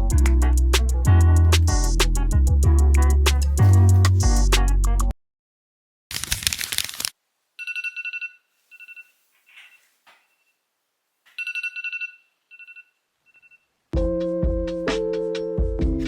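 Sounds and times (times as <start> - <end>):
music: 0.0 - 5.1, 14.0 - 16.0
phone alarm trilling: 7.6 - 10.6, 11.4 - 13.7.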